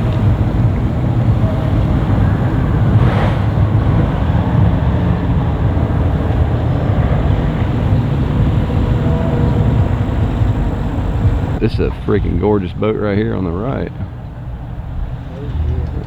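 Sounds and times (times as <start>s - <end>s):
boat engines low rumble: 0.0s - 16.0s
brief hiss: 3.0s - 3.7s.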